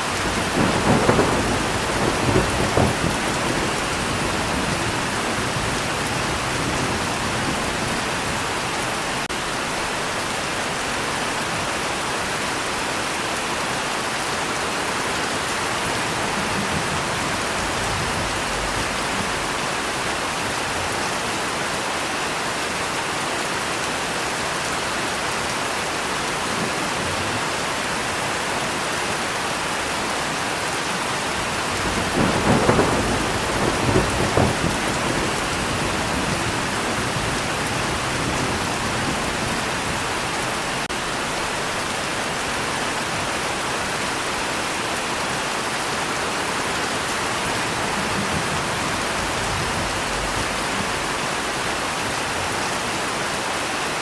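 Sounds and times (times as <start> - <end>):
thunder rolling: 0.0 - 9.2, 15.1 - 21.0, 31.3 - 41.2, 46.6 - 52.0
steady rain: 0.0 - 54.0.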